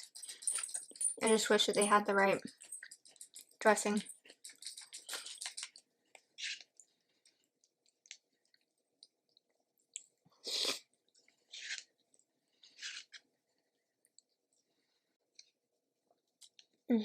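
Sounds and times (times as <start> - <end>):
chewing crisp salad greens: 2.8 - 13.2.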